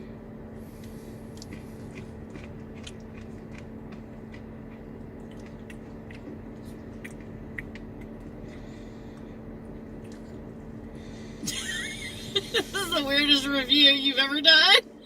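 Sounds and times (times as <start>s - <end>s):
steady low hum: 0.0s - 15.0s
person chewing: 0.8s - 10.9s.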